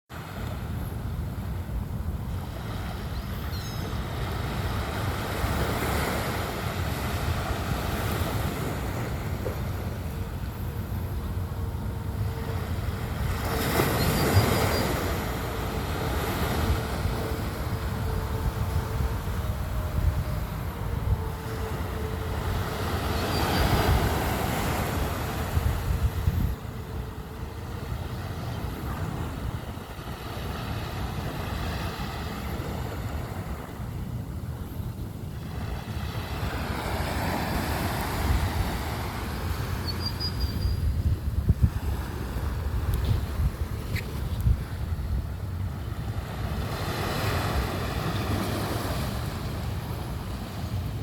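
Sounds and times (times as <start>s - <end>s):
bayside ambience: 0.1s - 51.0s
wind rumble on microphone: 0.1s - 51.0s
faint engine hum: 0.2s - 51.0s
water washing and surging: 4.4s - 28.1s.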